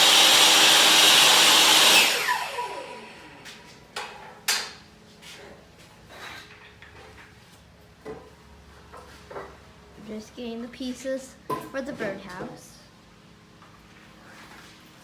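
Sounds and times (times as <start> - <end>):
table saw spinning down: 0.0 - 3.4.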